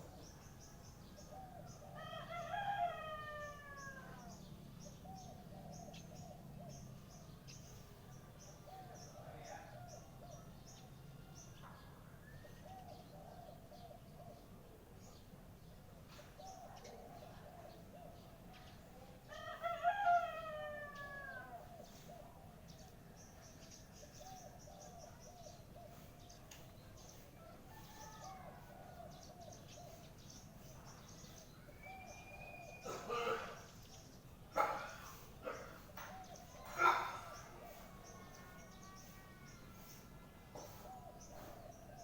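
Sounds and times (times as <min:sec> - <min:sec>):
rooster crowing: 0:02.0 - 0:04.3, 0:19.3 - 0:21.5.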